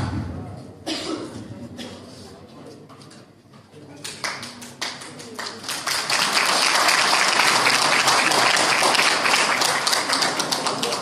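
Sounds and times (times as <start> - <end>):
audience applauding: 4.2 - 11.0.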